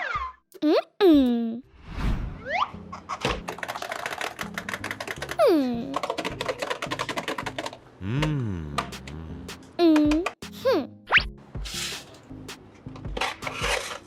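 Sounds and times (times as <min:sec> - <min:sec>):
light background music: 0:00.7 - 0:14.0
rapid clicking: 0:03.5 - 0:07.8.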